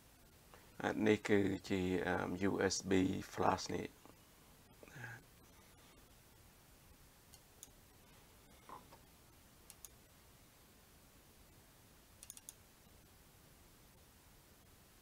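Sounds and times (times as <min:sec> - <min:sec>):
computer mouse clicks: 0:09.7 - 0:10.0, 0:12.2 - 0:12.6.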